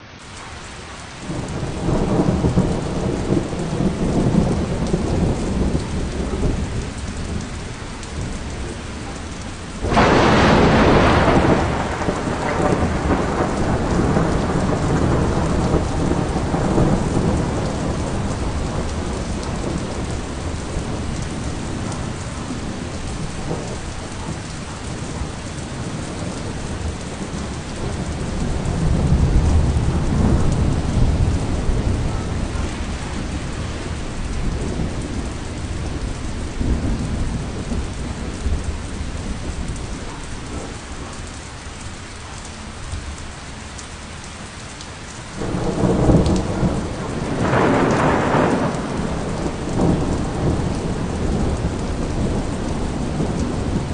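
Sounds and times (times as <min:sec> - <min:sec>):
heavy rain: 0:00.0 - 0:53.9
rolling thunder: 0:01.2 - 0:41.9, 0:45.3 - 0:53.9
sharp thunderclap: 0:09.8 - 0:41.1, 0:45.4 - 0:53.9.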